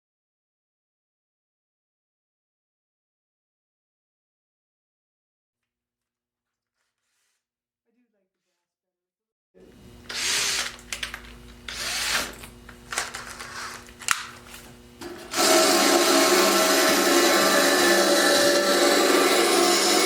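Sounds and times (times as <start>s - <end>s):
power tool grinding steel: 15.0s - 20.0s.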